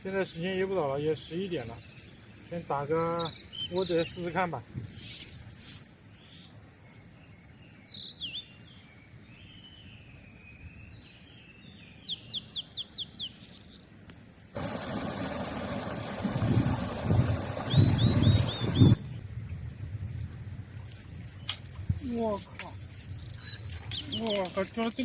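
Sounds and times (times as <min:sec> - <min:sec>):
wild birds chirping: 0:00.0 - 0:04.4, 0:06.2 - 0:14.0, 0:14.6 - 0:19.1, 0:23.1 - 0:25.0
steady rushing noise: 0:14.6 - 0:19.1.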